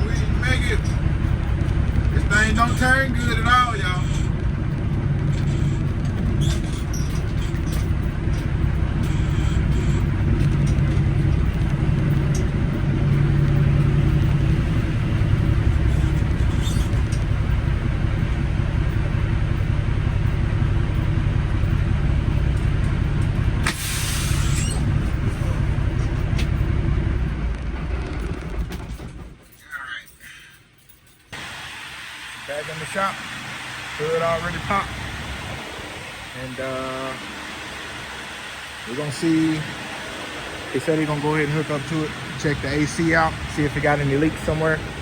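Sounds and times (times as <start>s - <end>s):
diesel truck engine rumble: 0.0s - 29.7s, 31.2s - 45.0s
loud air hiss: 23.6s - 24.9s, 31.4s - 42.4s.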